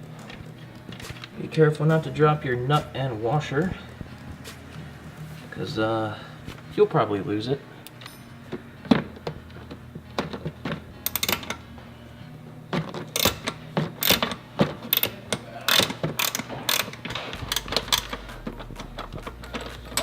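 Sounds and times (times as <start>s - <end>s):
socket ratchet clicking: 11.0s - 11.6s, 13.1s - 18.2s.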